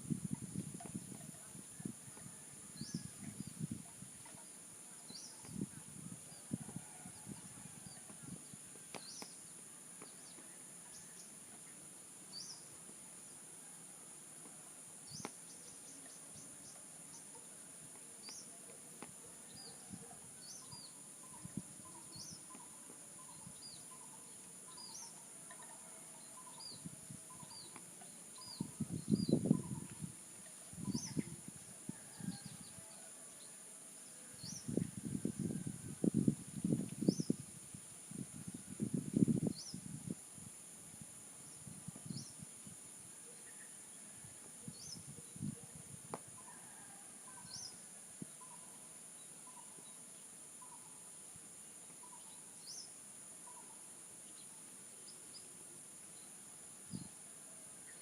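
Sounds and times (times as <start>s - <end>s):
small bird chirping: 8.9s - 11.3s, 20.4s - 30.1s, 30.7s - 31.4s, 37.0s - 37.4s.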